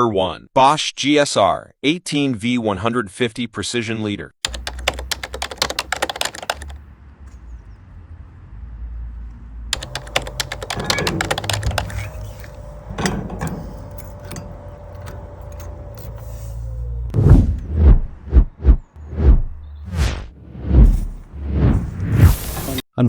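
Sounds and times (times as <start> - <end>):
rapid keyboard-like clicking: 4.5 - 6.8, 9.8 - 16.3
scattered clicks and knocks: 4.5 - 6.8, 9.8 - 16.9
low hum: 11.6 - 22.6.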